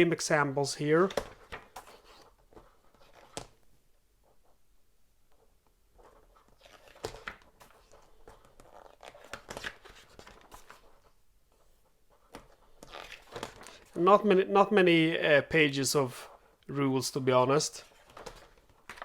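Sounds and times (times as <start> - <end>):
paper pages turning: 1.0 - 3.6, 6.0 - 14.0, 17.8 - 19.0.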